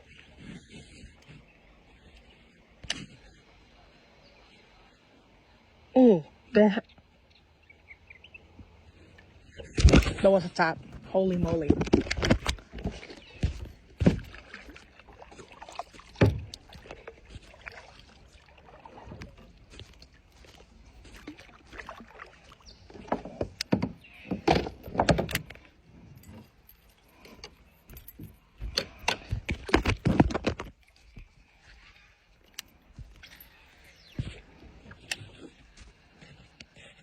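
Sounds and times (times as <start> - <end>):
kayak gear knocking and rattling: 9.5 - 17.7, 22.7 - 31.4.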